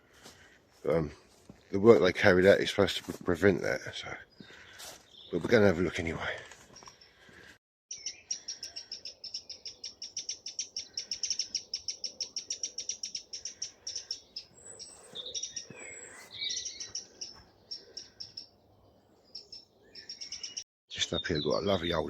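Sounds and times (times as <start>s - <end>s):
songbird singing: 7.9s - 22.0s.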